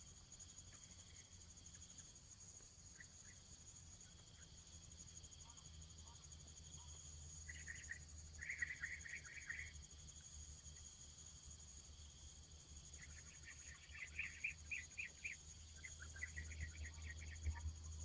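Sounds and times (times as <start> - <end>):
pulsing high insect trill: 0.0 - 18.0.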